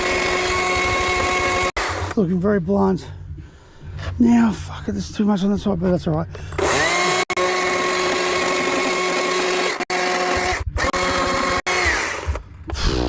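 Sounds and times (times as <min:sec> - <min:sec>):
chainsaw cutting wood: 0:00.0 - 0:02.2, 0:06.6 - 0:13.0.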